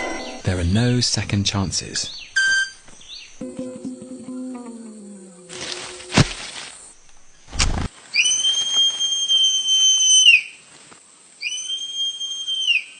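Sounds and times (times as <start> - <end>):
bird wing snaps: 7.5 - 7.9.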